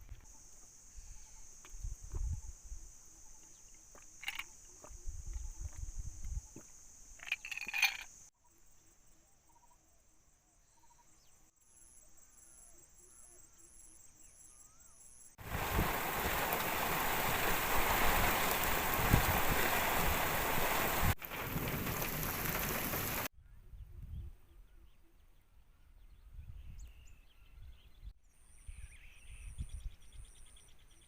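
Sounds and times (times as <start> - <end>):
insect pulsing: 0.0 - 8.3
insects droning: 0.0 - 23.3
faint bird chirps: 8.4 - 15.4, 23.4 - 31.0
heavy rain: 15.4 - 23.3
wind buffeting microphone: 15.4 - 24.4.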